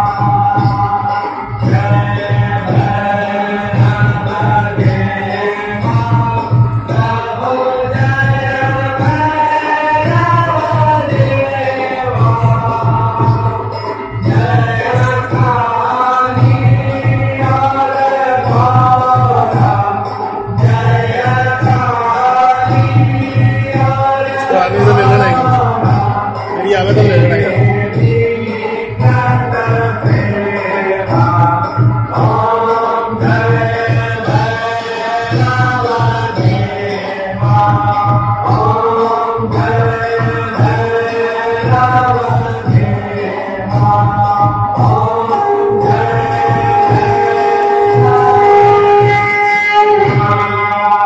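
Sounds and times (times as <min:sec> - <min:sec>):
drum keeping time: 0:00.0 - 0:50.4
devotional chanting: 0:00.0 - 0:51.0
musical accompaniment: 0:00.0 - 0:51.0
voices chanting a hymn: 0:20.0 - 0:31.2.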